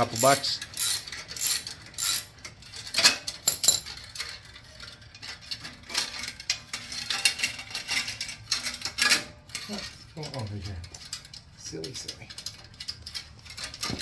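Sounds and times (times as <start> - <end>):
ratchet clicking on metal: 0.0 - 4.2.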